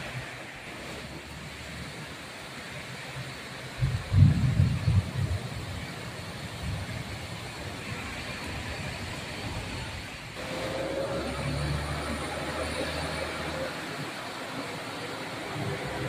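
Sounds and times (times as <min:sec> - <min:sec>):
heavy rain: 0:00.0 - 0:16.0
vehicle passing: 0:10.4 - 0:16.0.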